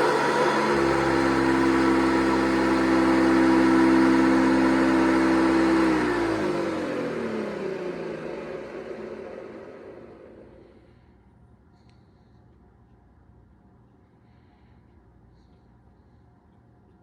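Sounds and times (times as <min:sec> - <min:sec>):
vacuum cleaner motor running: 0:00.0 - 0:10.8.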